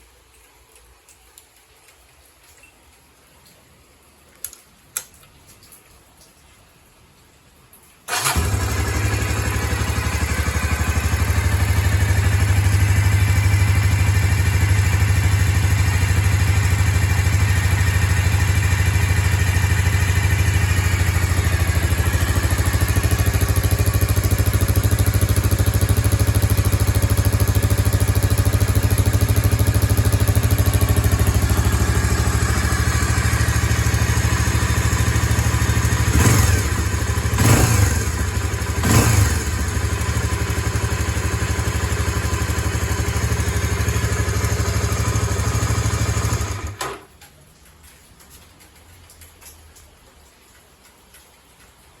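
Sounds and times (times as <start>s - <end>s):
motorcycle engine idling: 8.1s - 46.8s.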